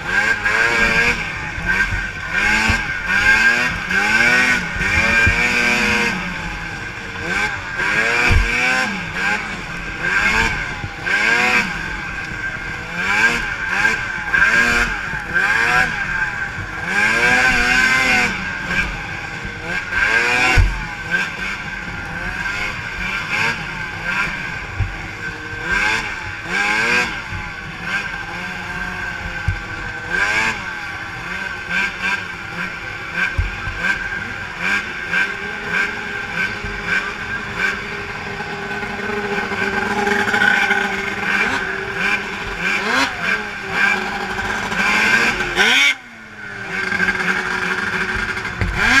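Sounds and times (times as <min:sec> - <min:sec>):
snowmobile engines racing: 0:00.0 - 0:49.0.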